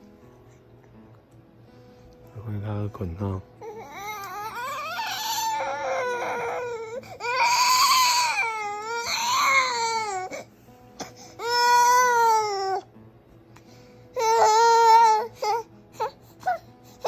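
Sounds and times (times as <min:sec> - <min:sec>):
baby crying: 0:03.6 - 0:12.9, 0:14.2 - 0:17.0.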